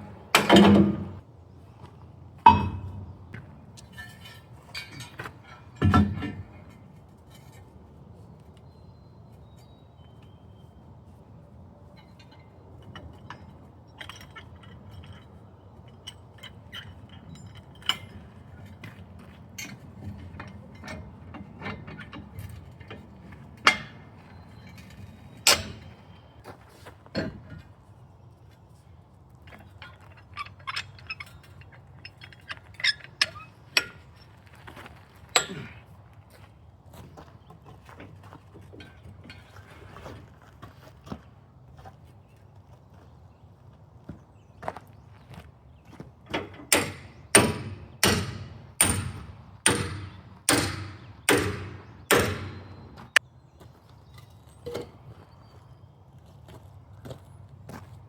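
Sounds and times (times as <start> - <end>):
light clicks clinks and knocks: 12.0 - 19.0.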